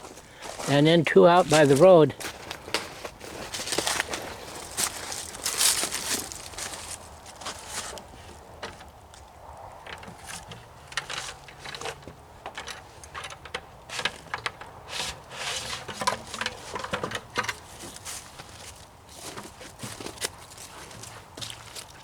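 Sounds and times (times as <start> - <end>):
footsteps crunching in wet snow: 0.0 - 8.4, 17.6 - 22.0.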